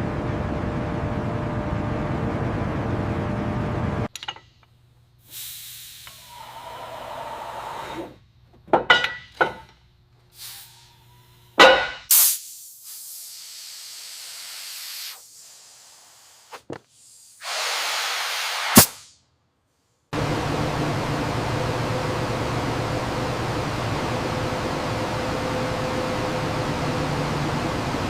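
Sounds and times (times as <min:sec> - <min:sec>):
short spraying hisses: 0:05.3 - 0:06.5, 0:10.4 - 0:10.9, 0:12.1 - 0:19.2
steady hiss: 0:12.1 - 0:19.1.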